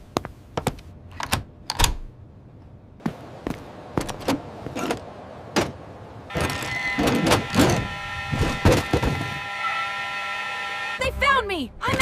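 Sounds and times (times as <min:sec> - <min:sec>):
mechanical whirring hum: 0:03.4 - 0:11.0.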